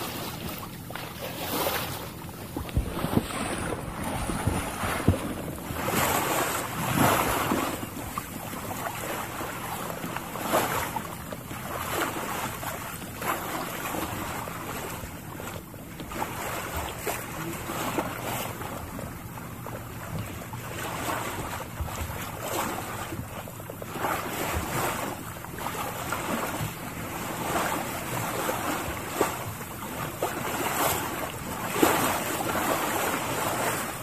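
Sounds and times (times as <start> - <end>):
water rushing: 0.0 - 12.3
wind: 0.0 - 34.0.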